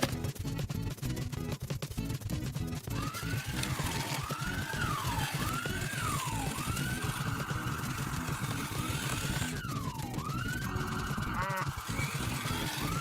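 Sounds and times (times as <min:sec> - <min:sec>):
electronic siren wailing: 0:03.0 - 0:13.0.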